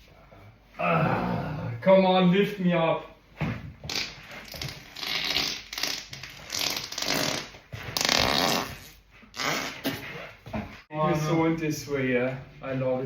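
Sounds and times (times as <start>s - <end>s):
person farting: 3.8s - 10.0s.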